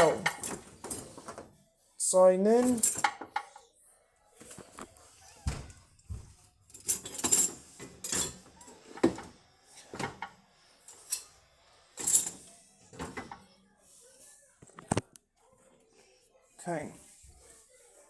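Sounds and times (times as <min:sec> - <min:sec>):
dishes clattering into dishwasher: 0:00.0 - 0:01.4, 0:02.6 - 0:03.5, 0:06.7 - 0:10.4, 0:12.0 - 0:13.4.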